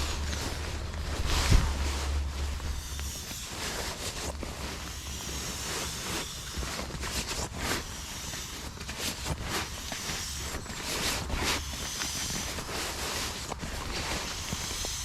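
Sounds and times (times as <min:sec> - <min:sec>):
wind rumble on microphone: 0:00.0 - 0:05.7
camp gear rustling and crinkling: 0:00.0 - 0:15.0.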